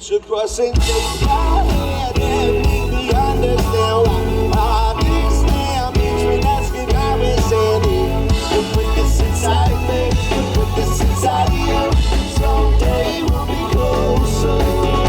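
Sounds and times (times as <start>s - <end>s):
drum kit: 0.6s - 15.0s
bass guitar: 0.8s - 15.0s
wavering melodic lead line: 0.8s - 15.0s.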